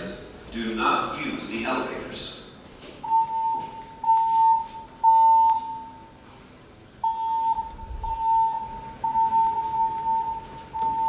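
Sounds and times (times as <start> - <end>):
fire alarm evacuation beeps: 3.0 - 6.3, 7.0 - 11.0.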